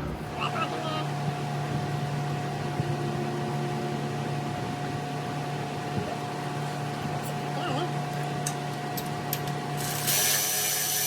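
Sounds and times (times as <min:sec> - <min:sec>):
machine hum with pitched tone: 0:09.6 - 0:11.0.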